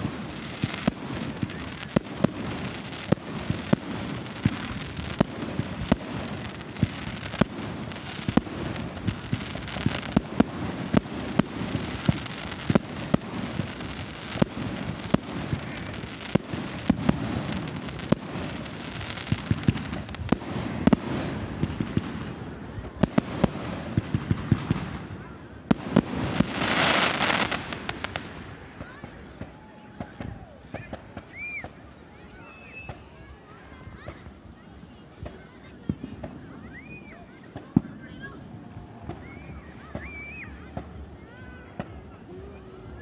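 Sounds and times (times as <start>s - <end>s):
fireworks bangs: 0.0s - 33.1s
fireworks crackle: 0.0s - 33.4s.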